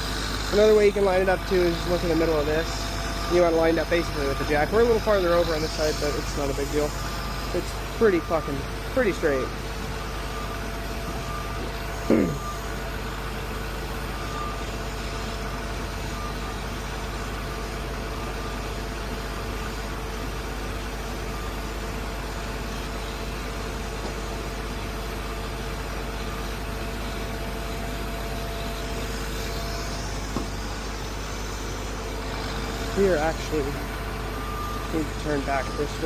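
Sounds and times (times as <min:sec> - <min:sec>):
diesel engine running: 0:00.0 - 0:36.0.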